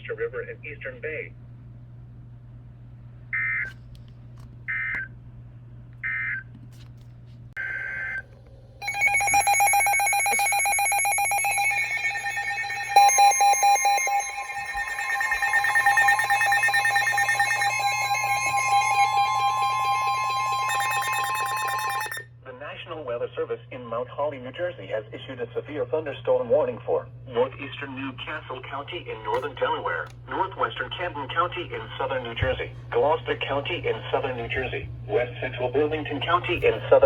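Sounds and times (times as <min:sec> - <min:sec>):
digital data chirps: 0:08.8 - 0:22.2
harsh alert tone: 0:08.8 - 0:22.2
second alert tone: 0:08.8 - 0:22.2.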